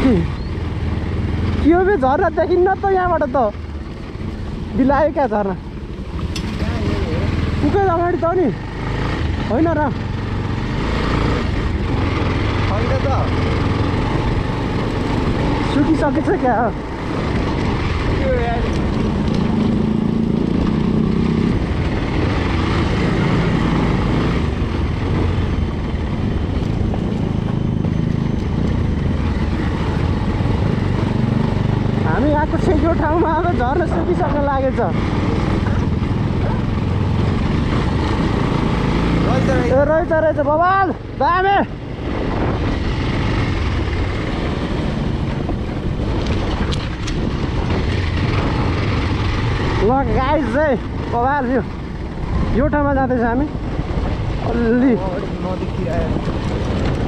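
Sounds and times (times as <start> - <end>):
motorcycle engine running: 0.0 - 57.0
wind rushing over microphone: 10.2 - 40.1, 40.9 - 57.0
wind buffeting microphone: 41.0 - 57.0.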